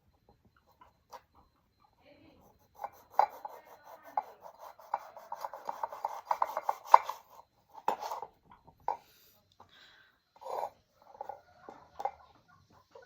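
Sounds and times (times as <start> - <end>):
knife sawing through limes: 2.7 - 7.4.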